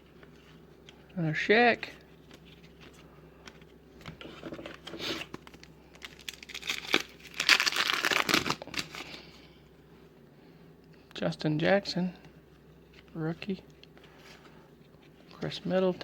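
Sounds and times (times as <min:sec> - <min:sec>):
foil wrapper crinkling and tearing: 0:05.1 - 0:09.2.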